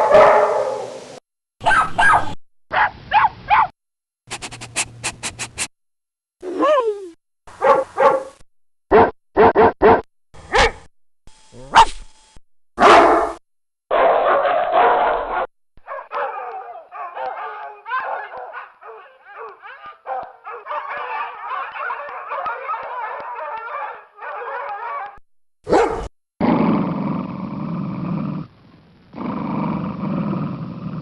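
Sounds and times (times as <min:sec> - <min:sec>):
dogs barking: 0:00.0 - 0:00.9, 0:01.6 - 0:03.7, 0:07.6 - 0:10.9, 0:12.8 - 0:26.1.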